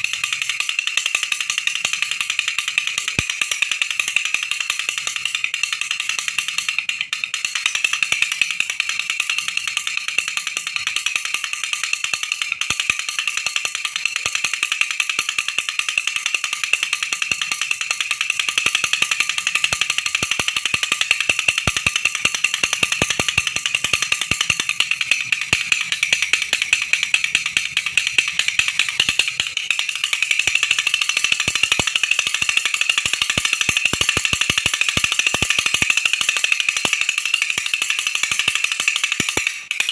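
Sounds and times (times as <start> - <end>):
baby rattle shaken: 15.4 - 39.9.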